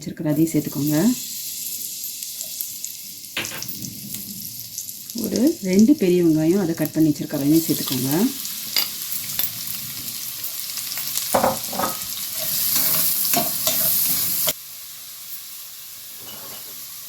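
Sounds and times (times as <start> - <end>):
onions sizzling in a frying pan: 0.0 - 17.0
spoon scraping a pan: 8.7 - 14.6, 16.2 - 16.9.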